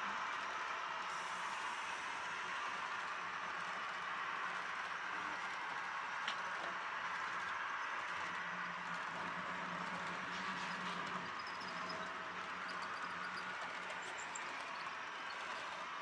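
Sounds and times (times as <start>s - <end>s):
model train motor whirring: 0.0s - 16.0s.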